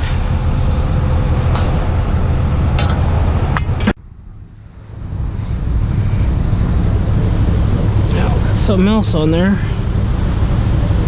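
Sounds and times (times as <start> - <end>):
wind noise on microphone: 4.8 - 11.0.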